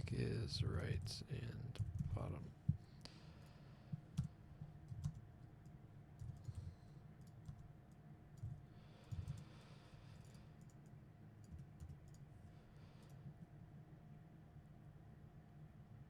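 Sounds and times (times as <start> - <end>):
faint typing on keyboard: 0.8 - 13.5.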